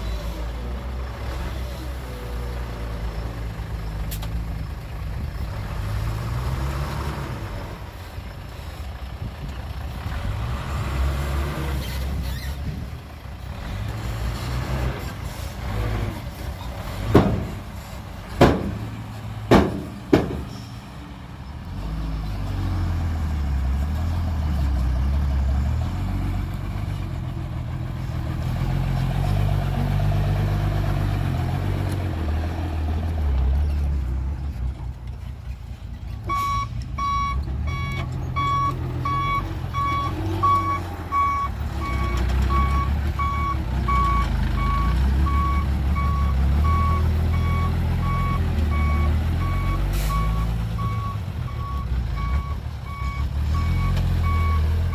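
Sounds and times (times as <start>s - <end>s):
reversing alarm beeping: 36.3s - 54.9s.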